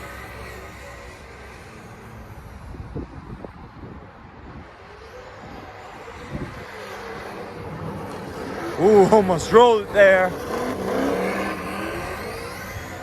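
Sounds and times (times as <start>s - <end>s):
simulated engine sound from speaker: 4.6s - 13.0s.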